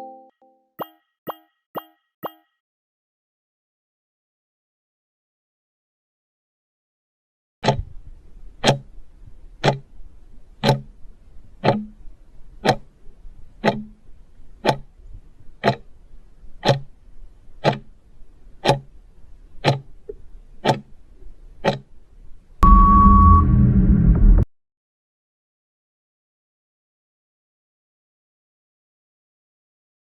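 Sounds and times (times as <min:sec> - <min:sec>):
clock ticking: 0:00.8 - 0:02.5, 0:07.6 - 0:08.0, 0:08.6 - 0:10.0, 0:10.6 - 0:13.0, 0:13.6 - 0:14.0, 0:14.6 - 0:15.0, 0:15.6 - 0:15.9, 0:16.6 - 0:17.0, 0:17.6 - 0:18.0, 0:18.6 - 0:19.0, 0:19.6 - 0:21.0, 0:21.6 - 0:21.9.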